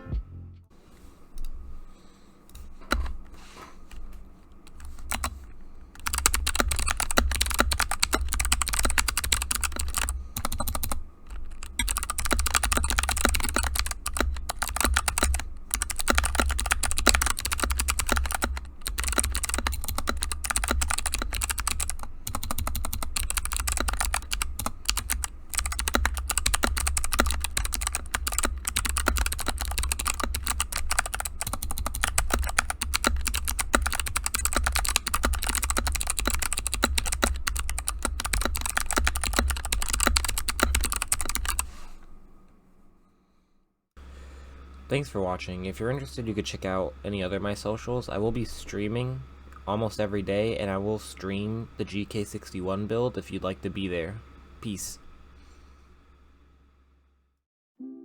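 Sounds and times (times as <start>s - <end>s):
clicky mechanical keyboard typing: 4.6s - 41.7s.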